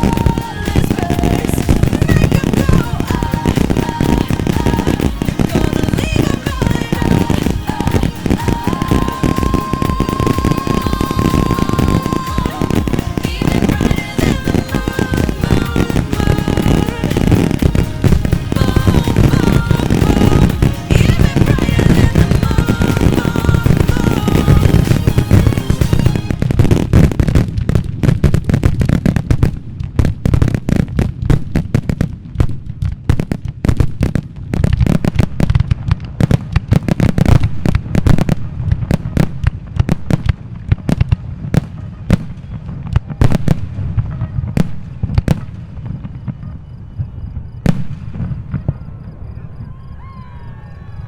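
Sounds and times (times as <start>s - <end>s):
fireworks bangs: 0.0s - 51.0s
loud firework report: 0.0s - 51.0s.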